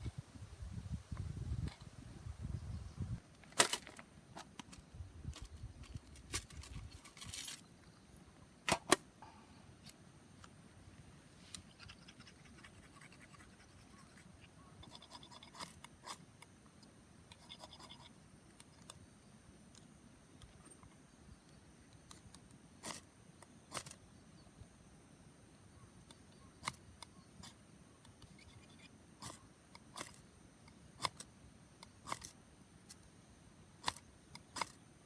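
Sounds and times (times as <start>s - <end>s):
small objects clicking and scraping: 3.3s - 8.0s, 31.0s - 33.0s, 33.8s - 34.8s.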